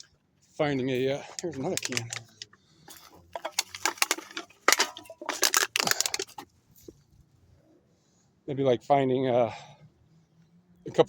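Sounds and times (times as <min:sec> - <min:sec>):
drink can clicking and crinkling: 0:01.2 - 0:06.5.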